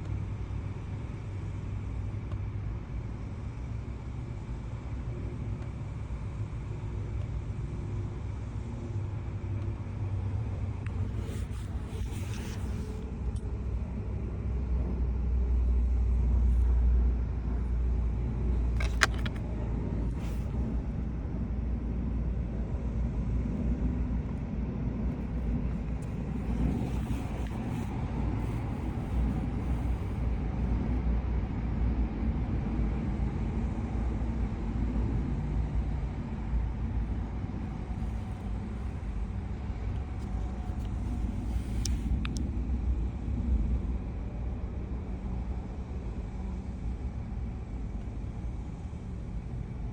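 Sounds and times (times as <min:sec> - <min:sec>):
car rumble: 0:10.8 - 0:14.6, 0:16.4 - 0:21.8, 0:23.5 - 0:31.0, 0:37.0 - 0:43.0.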